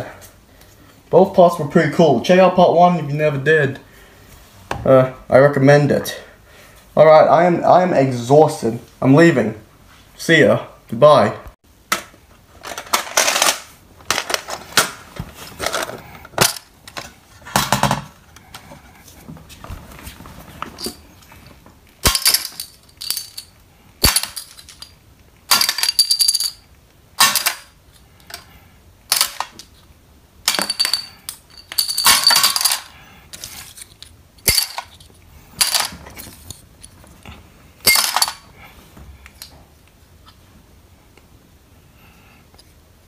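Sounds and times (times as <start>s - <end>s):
metal tins clinking: 30.5s - 33.5s, 37.8s - 38.5s.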